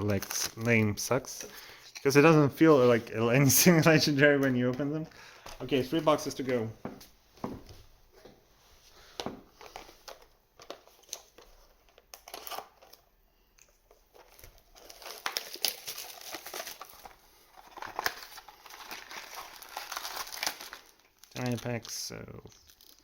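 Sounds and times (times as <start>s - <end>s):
foil wrapping crinkling and tearing: 0.0s - 2.3s, 14.2s - 23.0s.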